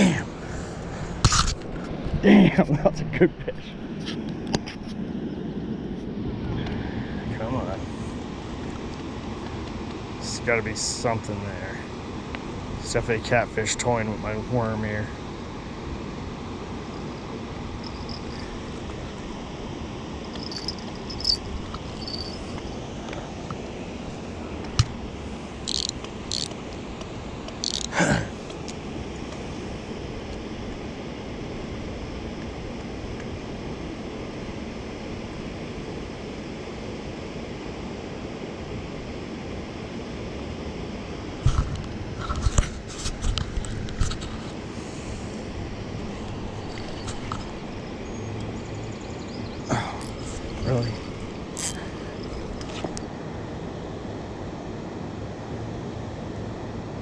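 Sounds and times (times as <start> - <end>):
river water over rocks: 15.4 - 29.8.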